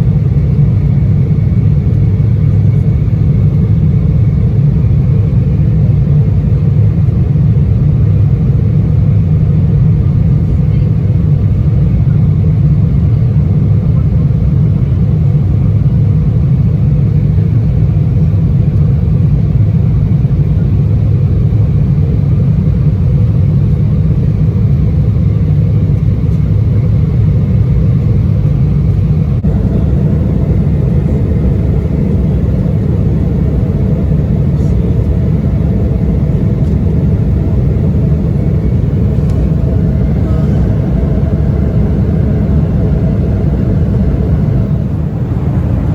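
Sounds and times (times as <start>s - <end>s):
jet cabin roar: 0.0s - 45.9s
faint steady hum: 25.1s - 45.9s.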